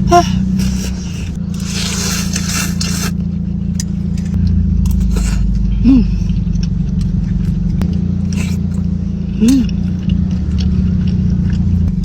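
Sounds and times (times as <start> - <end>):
person humming: 0.0 - 1.1, 5.7 - 6.3, 9.3 - 9.8
low engine rumble: 0.0 - 12.0.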